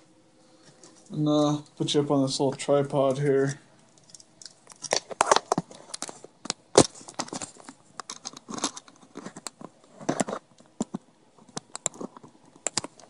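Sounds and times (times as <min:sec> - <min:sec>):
small plastic parts clicking: 0:04.0 - 0:13.0.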